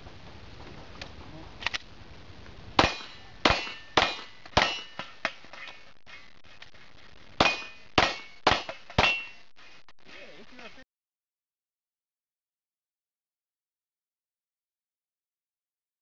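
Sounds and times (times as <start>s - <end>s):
pistol shots: 2.8s - 5.2s, 7.4s - 9.3s
short metallic ring: 9.0s - 9.4s.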